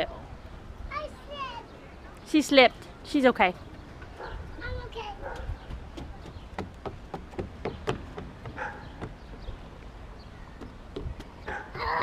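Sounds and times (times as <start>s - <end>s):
wind rumble on microphone: 3.6s - 12.0s
footsteps on wooden planks: 5.3s - 11.8s.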